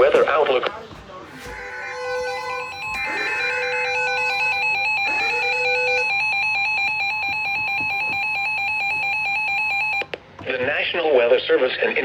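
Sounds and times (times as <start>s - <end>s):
steady alarm tone: 1.5s - 10.2s
pulsing electronic beep: 2.4s - 10.1s.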